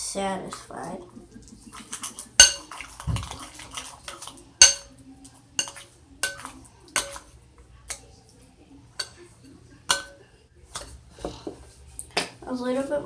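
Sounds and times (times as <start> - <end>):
utensil stirring slime: 0.2 - 8.4
utensil clinking bowl: 1.7 - 8.1, 8.9 - 11.6.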